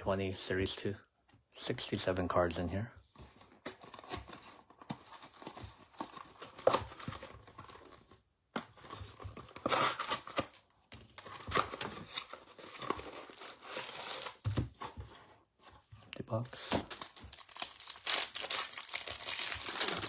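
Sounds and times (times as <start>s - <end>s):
cardboard tearing and crinkling: 8.8s - 14.9s, 16.6s - 20.0s.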